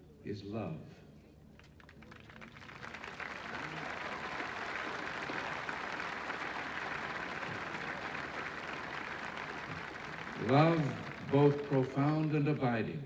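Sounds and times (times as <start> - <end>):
crowd applauding: 1.7 - 12.7.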